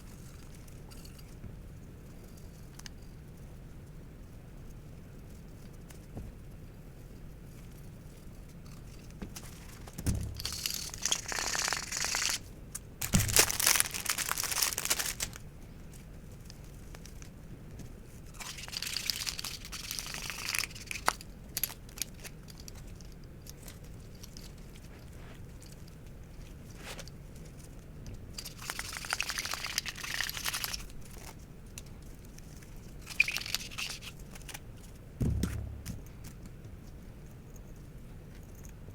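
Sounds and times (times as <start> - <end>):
low knock: 10.0 - 10.8, 35.2 - 36.6.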